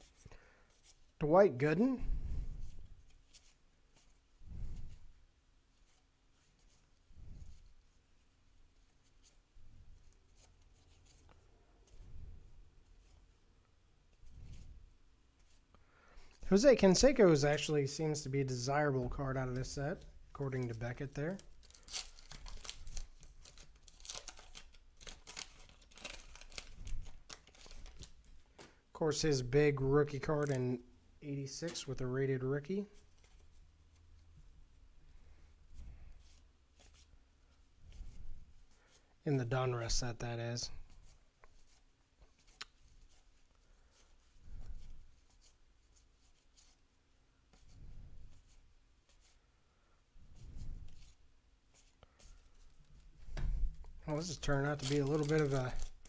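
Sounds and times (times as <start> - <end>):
cards and paper rustling: 19.4 - 28.8, 30.0 - 30.8, 50.7 - 56.0.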